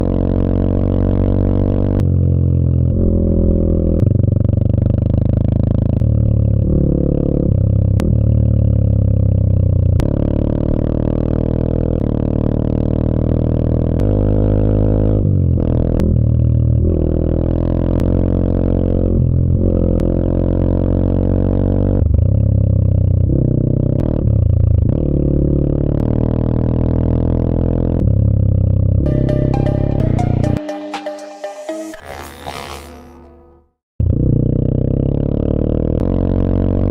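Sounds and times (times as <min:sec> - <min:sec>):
electronic music droning bass: 0:29.0 - 0:34.2
faint regular beat: 0:29.1 - 0:32.1.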